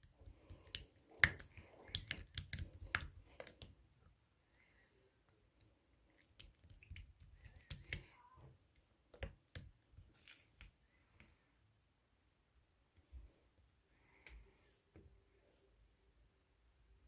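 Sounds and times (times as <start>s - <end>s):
slime clicking and popping: 0.3s - 3.7s.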